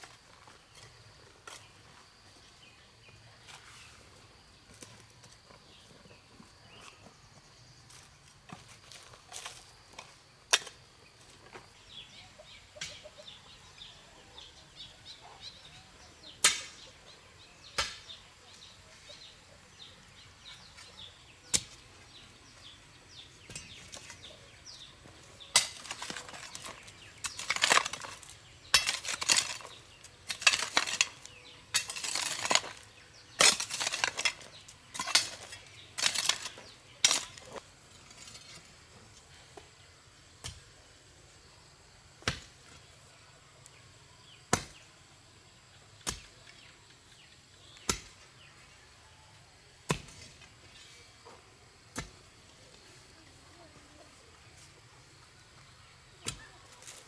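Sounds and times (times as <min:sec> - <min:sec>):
scraping strikes: 0:25.1 - 0:38.7.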